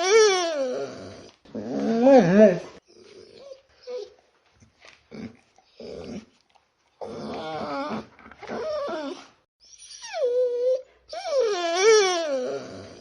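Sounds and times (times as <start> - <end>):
dog whining: 0.0 - 4.2, 7.0 - 13.0.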